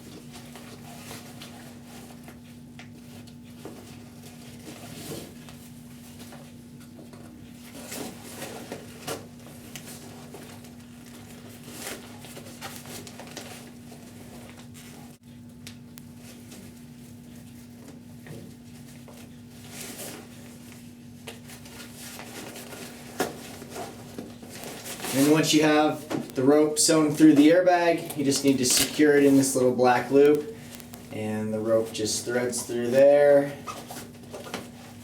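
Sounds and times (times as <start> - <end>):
steady low hum: 0.0 - 35.0
handling noises: 17.5 - 35.0
rope rustling and scraping through nylon: 21.5 - 26.0.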